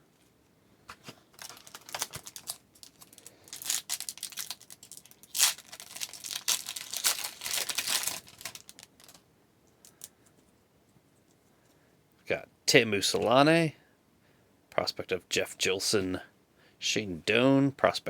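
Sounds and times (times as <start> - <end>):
wrapper tearing and crinkling: 1.4 - 9.2.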